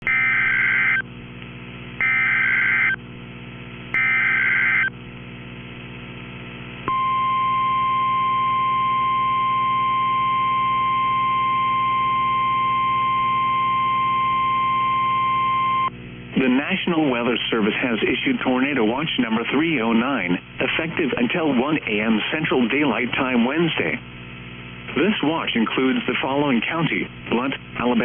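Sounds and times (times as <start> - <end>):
constant low hum: 0.0 - 28.0
steady warning alarm tone: 0.1 - 1.0, 2.0 - 3.0, 4.0 - 4.9, 6.9 - 15.9.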